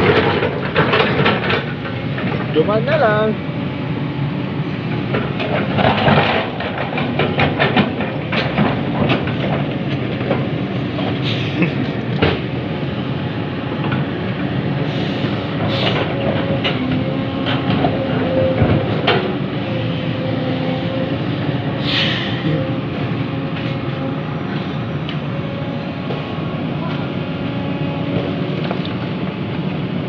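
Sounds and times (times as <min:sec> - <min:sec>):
metal clanks and knocks: 0:00.0 - 0:02.6, 0:05.1 - 0:11.2
excavator engine running: 0:00.0 - 0:30.0.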